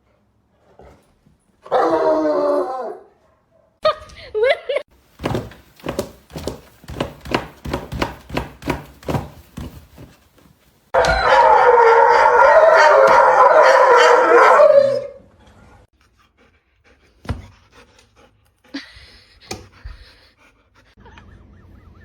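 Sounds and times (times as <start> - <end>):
dog howling: 1.7 - 3.1, 11.0 - 15.3.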